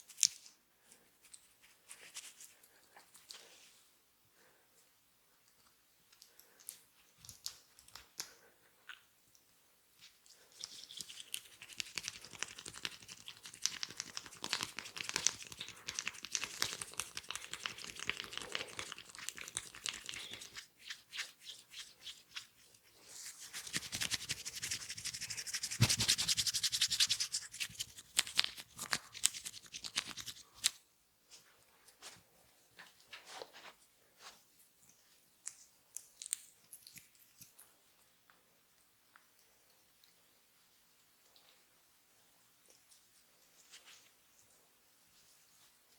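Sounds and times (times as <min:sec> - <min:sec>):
fingers scratching hair and scalp: 0:10.6 - 0:22.5, 0:23.2 - 0:30.8.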